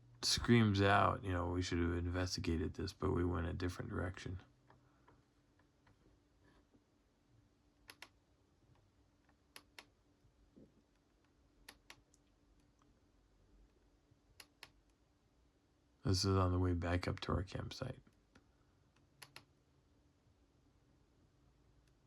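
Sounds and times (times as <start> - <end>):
low steady hum: 0.0 - 22.0
computer mouse clicks: 7.8 - 8.2, 8.8 - 10.0, 10.9 - 12.9, 14.4 - 15.0, 18.3 - 19.6.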